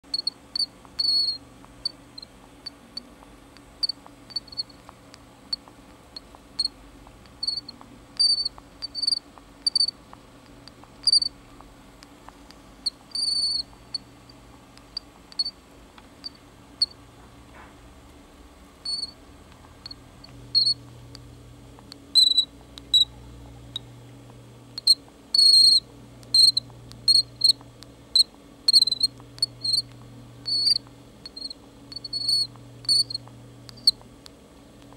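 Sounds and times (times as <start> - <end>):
high-pitched squeak on breaths: 1.0 - 1.4, 7.4 - 9.9, 11.0 - 11.3, 13.1 - 13.7, 18.9 - 19.2, 22.2 - 23.1, 24.8 - 25.8, 28.7 - 29.8, 30.5 - 33.2.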